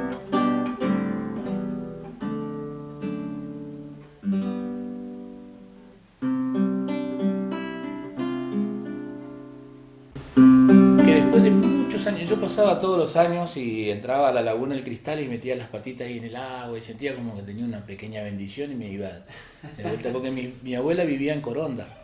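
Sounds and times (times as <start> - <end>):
acoustic guitar strummed chords: 0.0 - 13.3.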